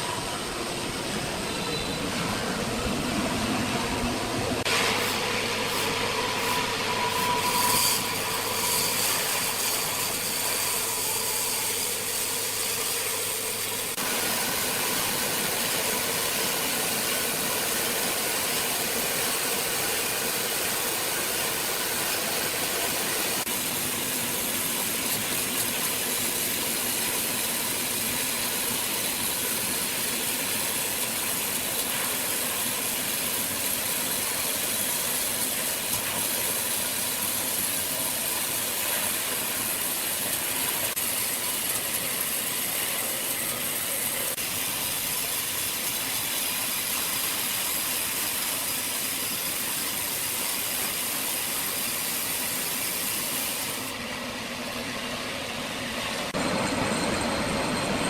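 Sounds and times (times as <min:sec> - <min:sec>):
machinery running: 0:00.0 - 0:44.4.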